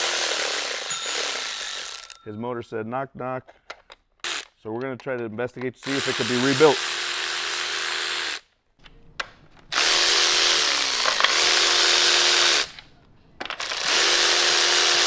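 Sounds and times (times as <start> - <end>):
electric power tool whining: 0.0 - 2.2, 4.2 - 4.5, 5.8 - 15.0.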